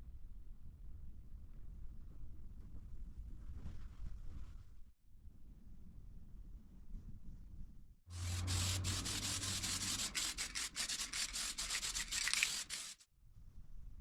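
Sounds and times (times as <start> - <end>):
sandpaper rubbing on metal panel: 8.2 - 13.0.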